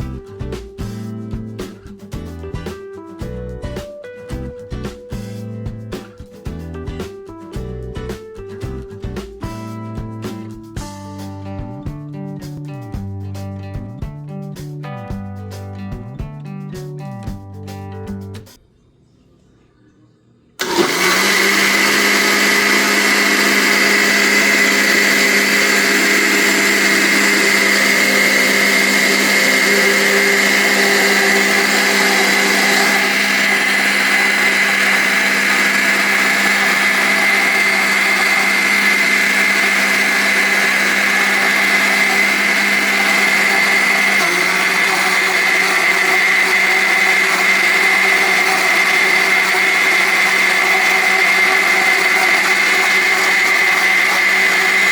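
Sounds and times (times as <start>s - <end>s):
blender running: 20.6s - 54.9s.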